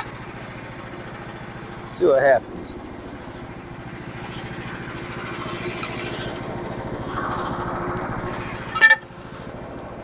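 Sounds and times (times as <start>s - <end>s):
small gas engine running: 0.0s - 10.0s
scraping noise: 5.3s - 9.0s.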